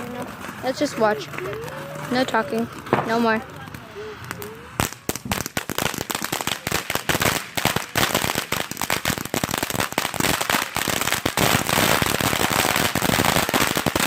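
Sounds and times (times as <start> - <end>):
fireworks cracking and popping: 0.0 - 14.0.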